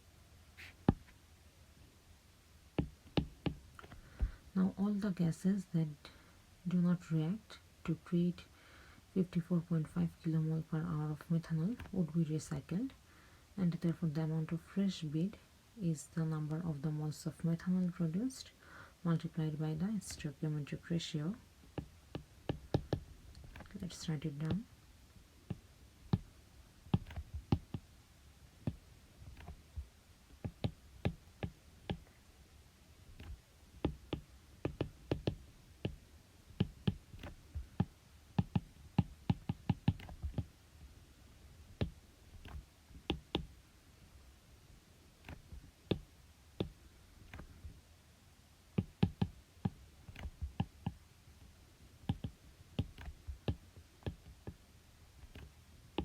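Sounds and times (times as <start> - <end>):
pen tapping on writing surface: 0.6 - 1.1, 2.8 - 4.4, 21.8 - 23.7, 27.0 - 27.8, 28.7 - 29.6, 30.4 - 32.1, 33.2 - 36.0, 36.6 - 40.5, 41.8 - 43.5, 48.8 - 51.0, 52.1 - 54.6.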